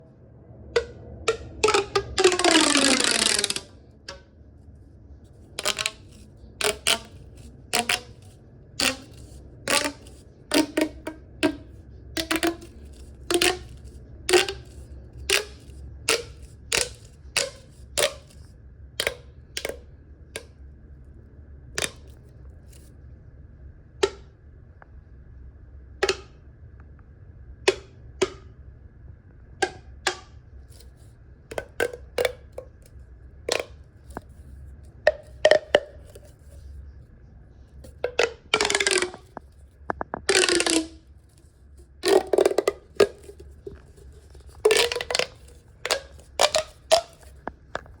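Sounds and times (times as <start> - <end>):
tube popping with short ring: 0.8 - 4.2, 5.6 - 18.4, 24.0 - 24.3, 27.7 - 28.5, 29.6 - 32.9, 33.5 - 34.5, 37.8 - 39.4, 40.1 - 41.4, 42.0 - 48.0.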